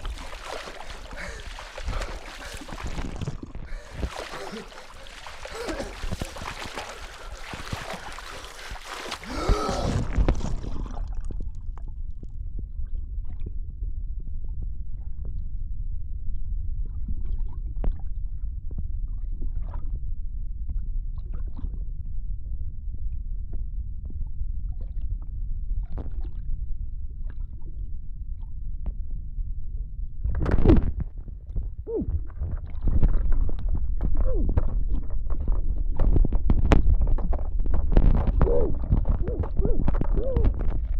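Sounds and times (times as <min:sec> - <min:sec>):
water rushing: 0:00.0 - 0:10.8
bubbling and churning water: 0:00.0 - 0:12.2, 0:31.5 - 0:40.9
underwater bubble pops: 0:00.0 - 0:13.7, 0:30.3 - 0:40.9
muffled underwater rumble: 0:00.0 - 0:40.9.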